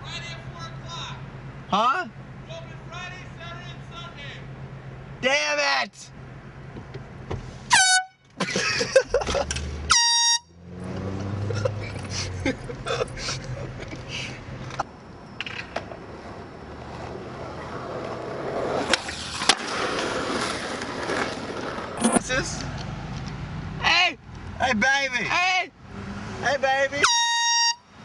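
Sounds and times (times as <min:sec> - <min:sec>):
car running: 0:00.0 - 0:28.0
air horn blasts: 0:07.7 - 0:08.3, 0:09.9 - 0:10.6, 0:27.0 - 0:28.0.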